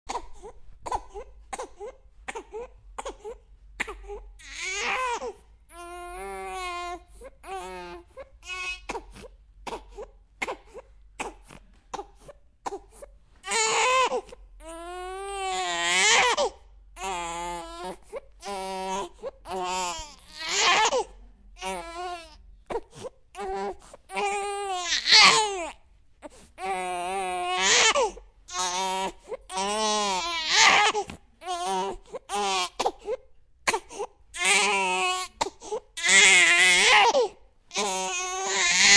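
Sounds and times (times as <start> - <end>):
baby crying: 4.0 - 9.1, 13.5 - 22.8, 23.4 - 25.8, 26.6 - 33.1, 33.7 - 38.9.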